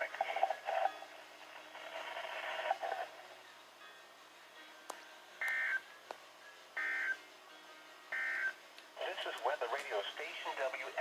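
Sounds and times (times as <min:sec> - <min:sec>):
radio hiss: 0:09.0 - 0:11.0.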